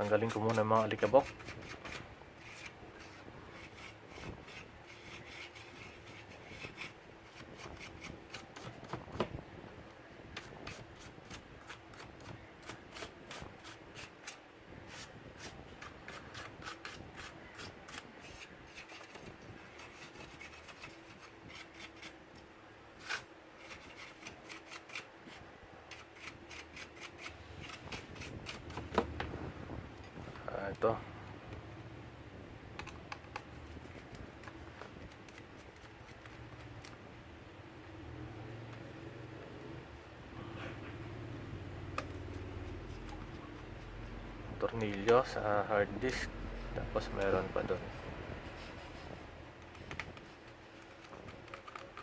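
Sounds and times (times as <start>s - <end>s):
scratchy rubbing strokes: 0.0s - 8.8s, 10.4s - 22.2s, 23.0s - 28.9s, 42.1s - 49.4s.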